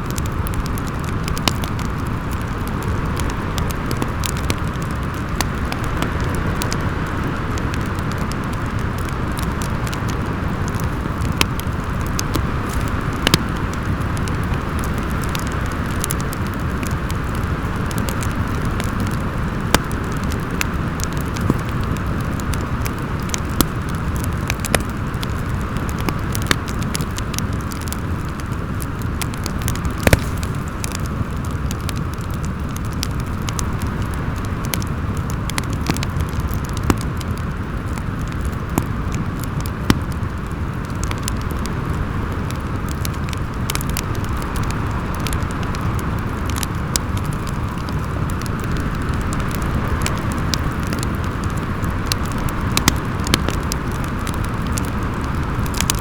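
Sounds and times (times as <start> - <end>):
crackling wood fire: 0.0 - 56.0
wind howling: 27.2 - 36.8.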